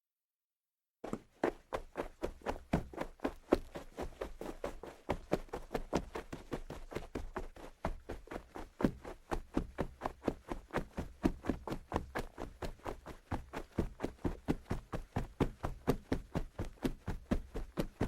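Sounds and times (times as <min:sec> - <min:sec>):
quick footsteps on hard floor: 0:01.0 - 0:09.2.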